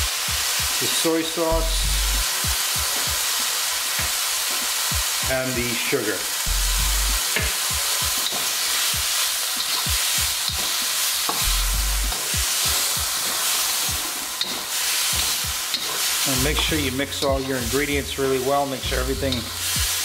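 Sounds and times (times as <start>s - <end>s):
food sizzling in a wok: 0.0s - 20.0s
dull low thumps: 1.6s - 2.9s, 6.5s - 7.2s, 11.4s - 12.1s
spatula scraping metal wok: 12.1s - 18.3s.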